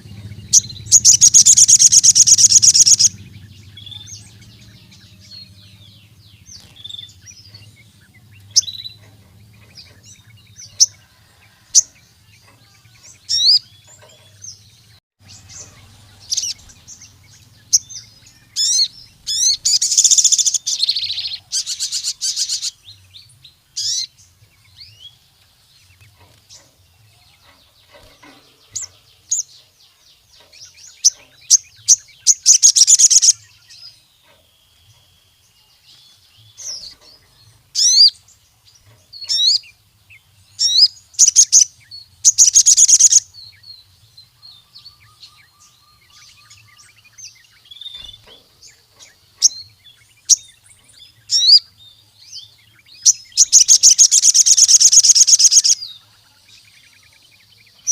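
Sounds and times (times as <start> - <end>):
faint low hum: 0.0 - 29.7
sunbird chirps and trills: 0.0 - 57.9.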